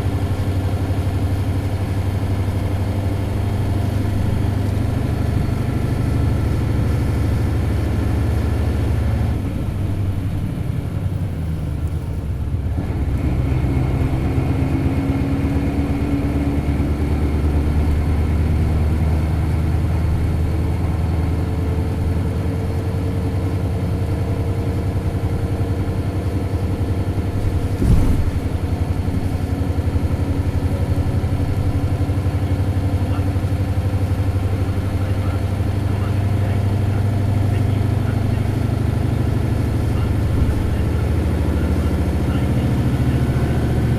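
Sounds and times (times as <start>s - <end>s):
bus diesel engine accelerating: 0.0s - 43.9s
sharp thump: 27.6s - 28.6s.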